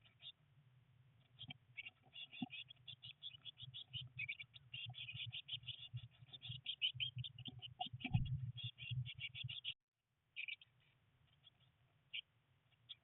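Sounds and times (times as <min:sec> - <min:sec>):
nestlings chirping: 0:01.2 - 0:09.8.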